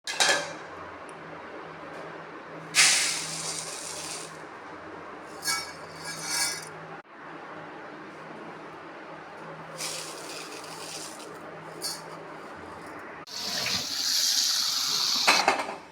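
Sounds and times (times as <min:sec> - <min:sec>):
loud cooking hiss: 0:02.8 - 0:04.4, 0:13.3 - 0:15.5.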